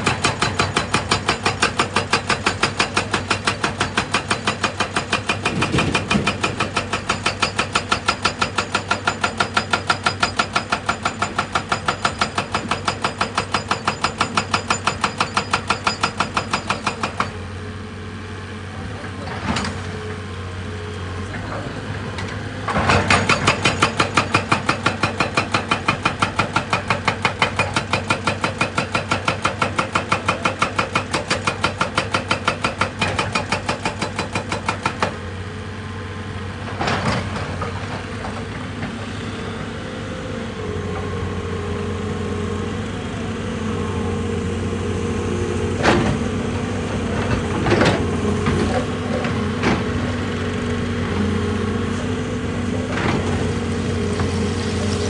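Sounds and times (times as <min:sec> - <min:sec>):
machine hammering on rock: 0:00.0 - 0:17.4, 0:22.9 - 0:35.2.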